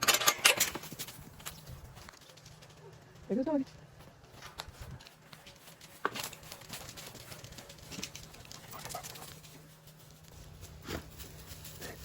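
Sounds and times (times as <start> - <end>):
dog moving about: 4.4 - 12.0.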